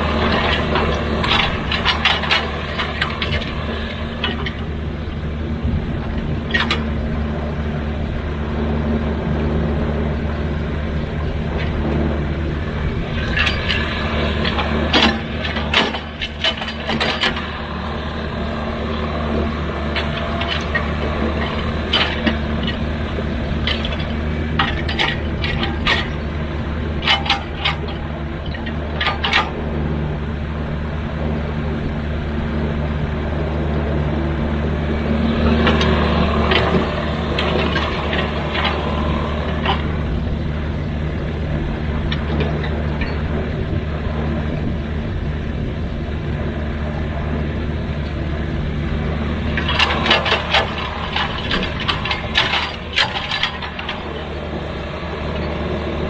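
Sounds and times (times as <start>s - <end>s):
excavator diesel engine running: 0.0s - 56.0s
sharp metallic knocks and clanks: 0.2s - 4.7s, 13.1s - 17.9s, 19.4s - 22.9s, 23.6s - 26.2s, 27.0s - 29.6s, 35.5s - 40.2s, 49.6s - 54.3s.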